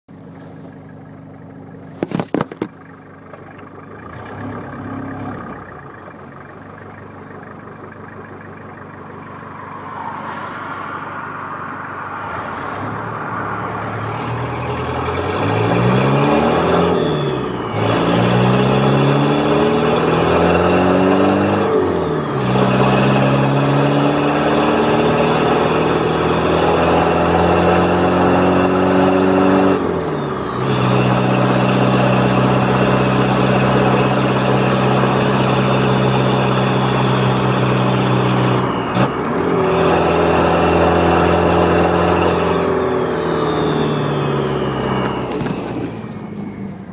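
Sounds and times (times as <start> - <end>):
car engine accelerating: 0.1 - 46.9
turbo whistle: 42.5 - 45.9.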